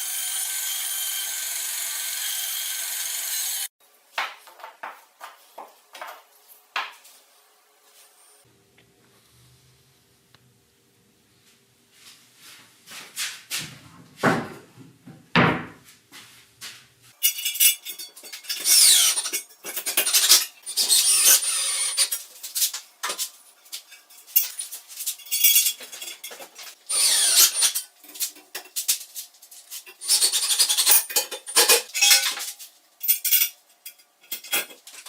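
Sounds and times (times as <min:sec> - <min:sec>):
metal tools clinking: 0:17.2 - 0:21.0, 0:21.9 - 0:26.8, 0:27.4 - 0:35.0.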